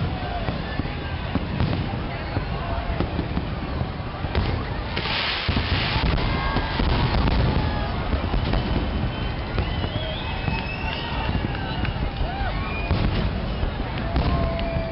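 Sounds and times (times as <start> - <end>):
fireworks bursts and bangs: 0.0 - 14.9
fireworks hissing crackle: 0.0 - 14.9.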